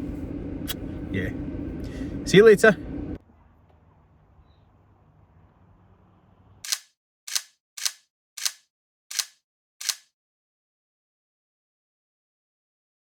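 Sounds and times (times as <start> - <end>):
sharp snapping clicks: 6.7 - 10.0.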